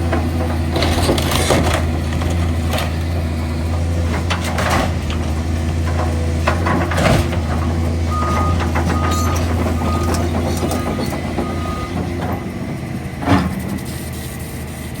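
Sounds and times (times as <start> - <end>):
demolition machinery engine hum: 0.0 - 15.0
short beeping alarm: 8.1 - 12.0.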